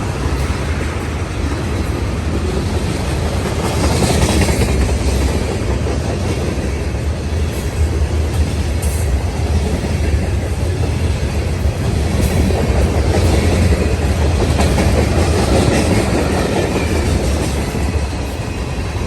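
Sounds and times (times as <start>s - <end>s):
freight train wheels rumbling on rails: 0.0s - 19.0s.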